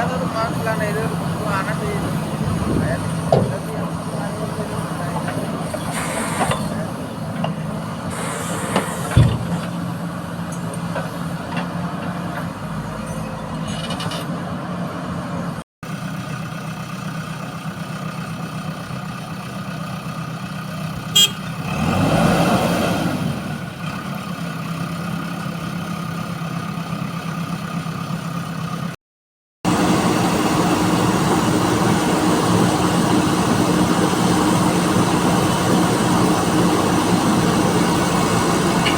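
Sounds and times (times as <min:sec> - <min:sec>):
heavy diesel engine running: 0:00.0 - 0:12.8, 0:14.5 - 0:22.2, 0:29.7 - 0:38.9.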